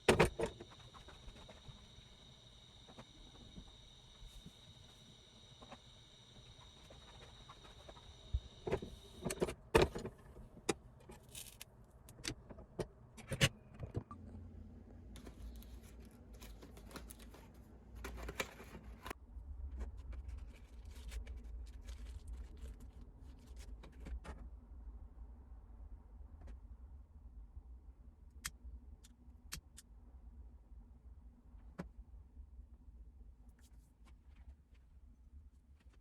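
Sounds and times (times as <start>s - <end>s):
steady low hum: 0.0s - 11.6s.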